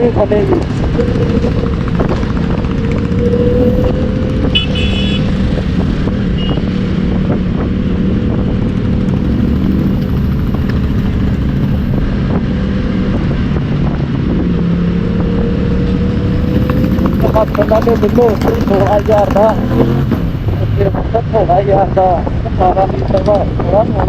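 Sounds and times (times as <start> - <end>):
motorcycle engine cruising: 0.0 - 24.0
road and wind noise: 0.0 - 24.0
vehicle horn beep: 4.5 - 5.3, 6.4 - 6.7.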